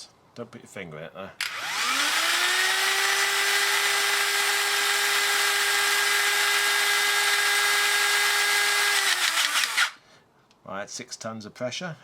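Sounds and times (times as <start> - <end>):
electric pump motor whining: 1.4 - 10.0.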